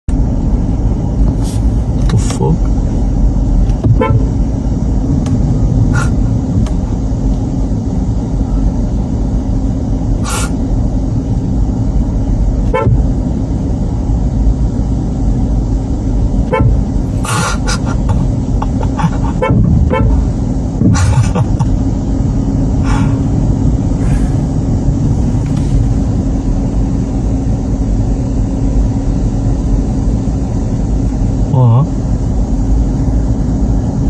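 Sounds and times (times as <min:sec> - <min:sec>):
low engine rumble: 0:00.0 - 0:34.0
car horn honking: 0:03.7 - 0:04.5, 0:12.6 - 0:13.2, 0:16.4 - 0:18.1, 0:18.8 - 0:21.4.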